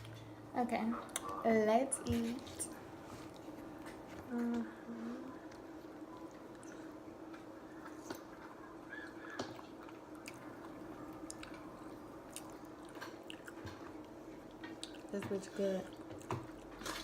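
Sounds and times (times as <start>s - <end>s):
person chewing food: 2.6s - 4.4s, 5.3s - 17.0s.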